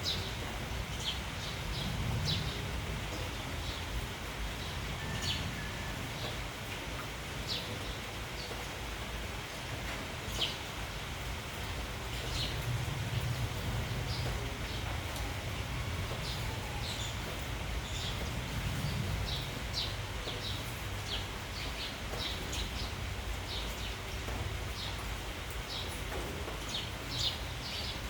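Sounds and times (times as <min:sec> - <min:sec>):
rain hissing: 0:00.0 - 0:28.0
sparrows chirping: 0:12.1 - 0:26.0, 0:26.6 - 0:28.0.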